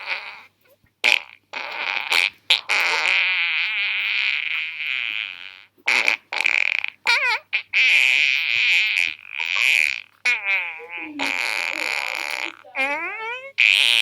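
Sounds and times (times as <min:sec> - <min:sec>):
farting: 0:00.0 - 0:14.0.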